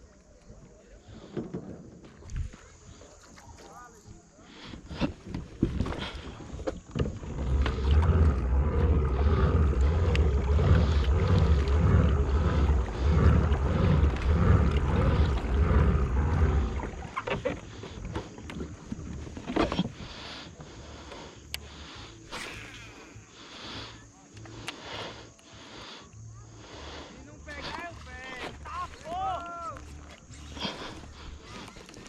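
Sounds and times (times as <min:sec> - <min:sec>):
low rumble on microphone: 0:04.8 - 0:27.6.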